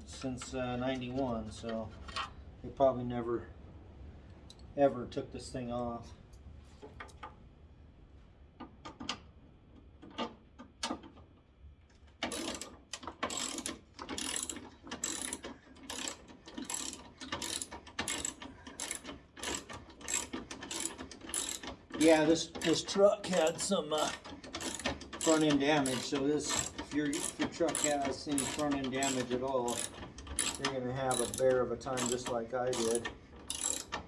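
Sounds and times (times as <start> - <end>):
ratchet wrench clicking: 12.3 - 34.0.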